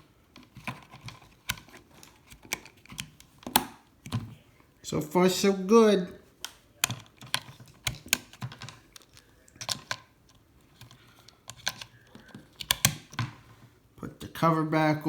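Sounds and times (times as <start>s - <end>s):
plastic clicks and taps: 0.3s - 4.4s, 6.4s - 13.5s.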